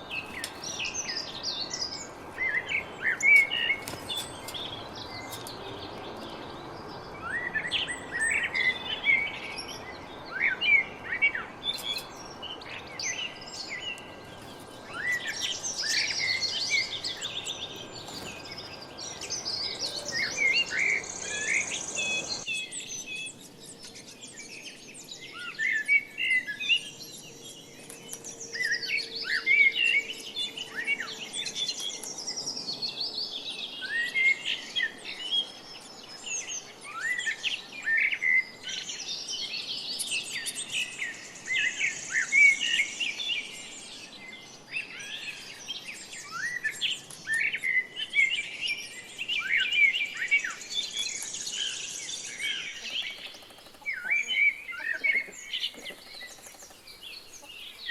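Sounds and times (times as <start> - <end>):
small birds chirping: 0.0 - 25.6, 38.4 - 57.9.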